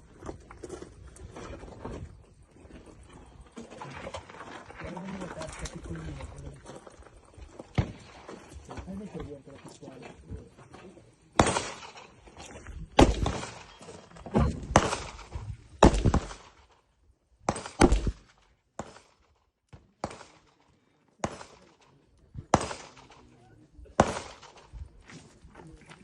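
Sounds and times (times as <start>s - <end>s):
airsoft gun shots: 11.4s - 12.1s, 13.0s - 13.7s, 14.5s - 16.6s, 17.5s - 19.1s, 22.5s - 23.2s, 24.0s - 24.7s.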